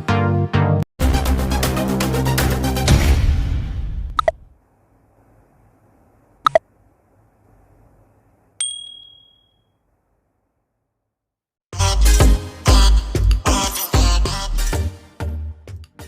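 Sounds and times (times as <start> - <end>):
music: 0.0 - 4.0, 11.7 - 16.0
bright bell-like ding: 8.6 - 9.7.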